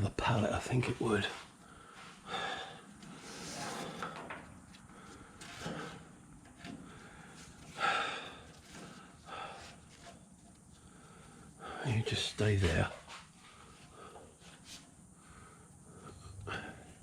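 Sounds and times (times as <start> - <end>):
hydraulic ram scraping and knocking: 3.0 - 10.7.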